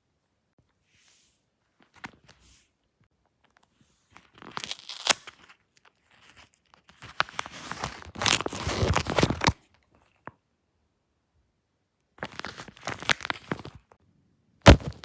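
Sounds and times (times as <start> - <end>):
paper pages crinkling: 3.4 - 10.3, 12.2 - 13.9, 14.7 - 15.0.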